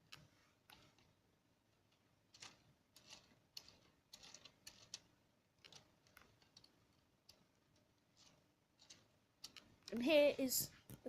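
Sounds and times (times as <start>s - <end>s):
faint plastic clicks: 0.0s - 11.0s.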